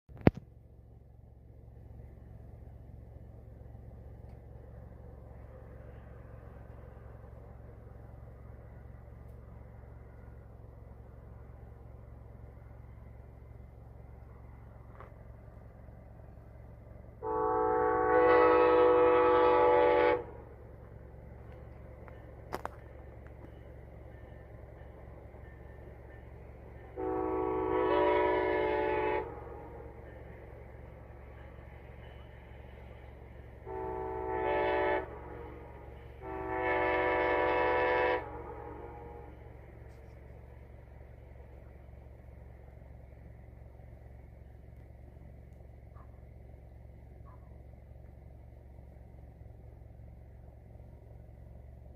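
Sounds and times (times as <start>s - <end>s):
low background rumble: 0.1s - 51.9s
train horn blast: 17.2s - 20.5s, 26.8s - 29.9s, 33.6s - 40.1s.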